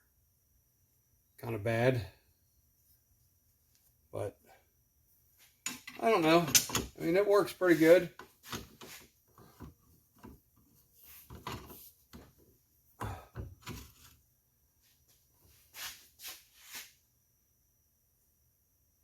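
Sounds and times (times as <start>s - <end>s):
faint knocks and clunks of pipe: 8.2s - 14.1s.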